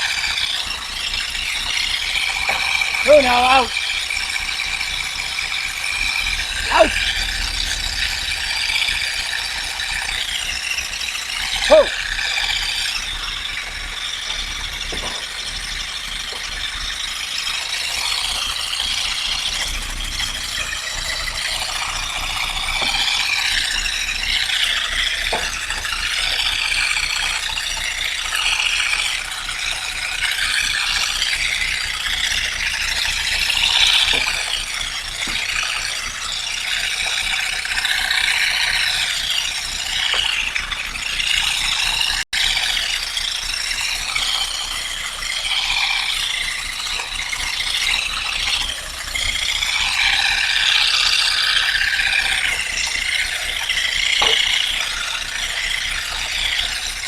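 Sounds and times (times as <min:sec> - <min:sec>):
dense clattering and rattling: 0:03.7 - 0:57.0.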